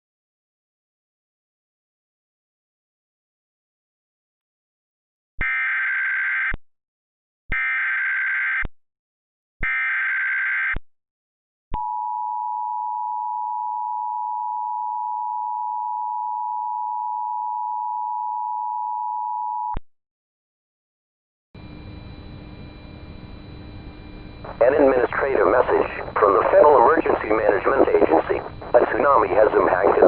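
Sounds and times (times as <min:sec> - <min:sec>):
data header bursts: 0:24.5 - 0:30.0.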